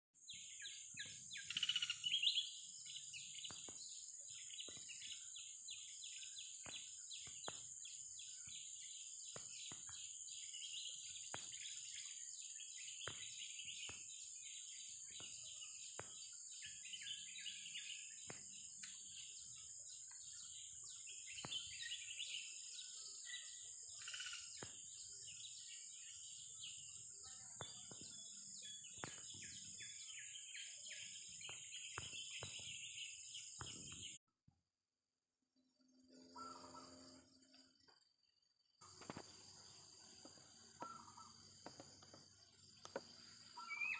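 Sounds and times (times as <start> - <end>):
bird singing chirps and whistles: 0.3 - 34.2, 36.2 - 37.3, 42.8 - 43.9
steady high-pitched drone: 35.8 - 37.7.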